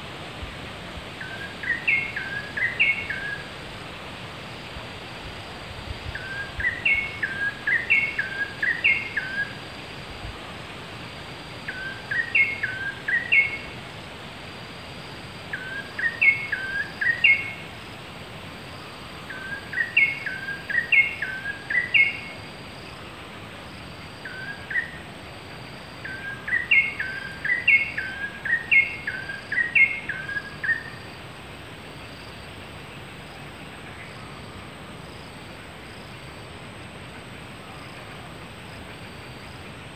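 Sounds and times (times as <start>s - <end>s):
faint insect drone: 0.0s - 39.9s
bird singing: 1.2s - 3.5s, 6.1s - 9.6s, 11.7s - 13.7s, 15.5s - 17.6s, 18.8s - 23.1s, 24.2s - 31.1s.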